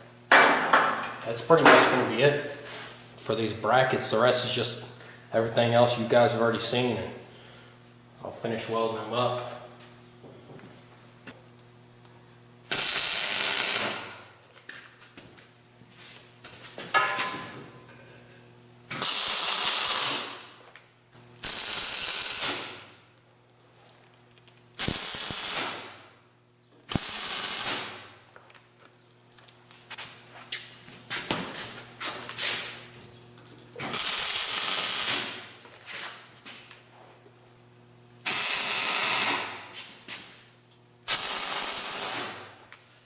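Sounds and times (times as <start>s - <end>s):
arc welder crackling: 7.9s - 15.6s, 18.6s - 36.9s, 37.5s - 43.0s.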